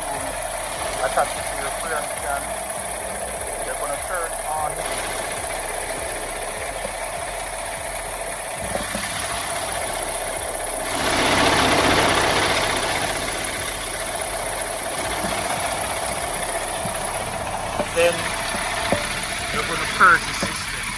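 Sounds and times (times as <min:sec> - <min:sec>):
diesel engine idling: 0:00.0 - 0:20.9.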